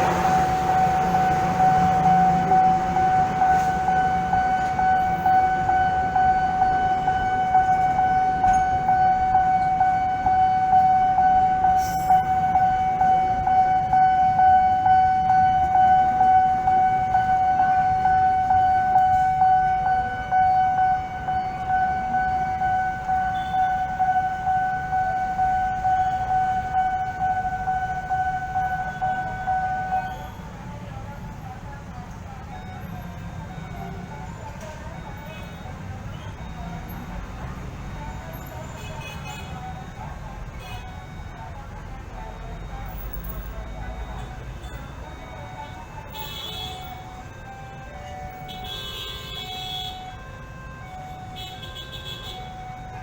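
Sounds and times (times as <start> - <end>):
steady alarm tone: 0.0 - 30.6, 31.2 - 53.0.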